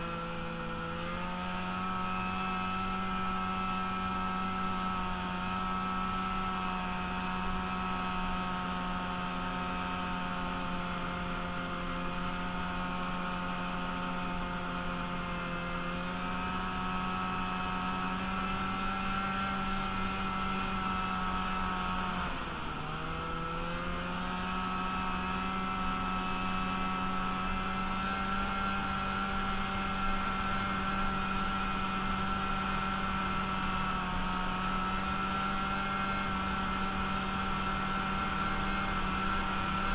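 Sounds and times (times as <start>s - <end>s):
vehicle engine running: 0.0s - 39.9s.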